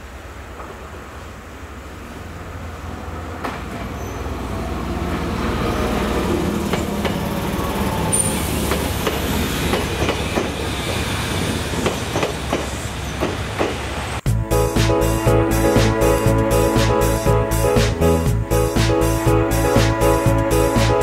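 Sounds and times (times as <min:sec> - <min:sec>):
train rumble: 0:00.0 - 0:21.0
high wheel squeal: 0:03.9 - 0:04.4, 0:07.5 - 0:13.2
train wheels clacking over rail joints: 0:06.0 - 0:13.9
music: 0:14.3 - 0:21.0.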